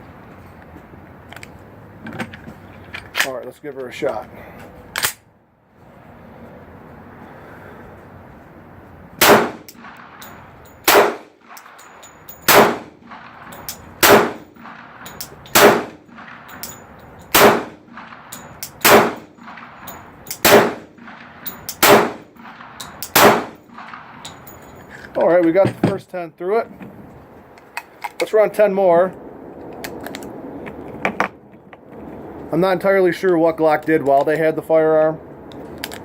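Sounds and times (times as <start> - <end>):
pistol shots: 9.2 - 11.8, 12.4 - 24.3.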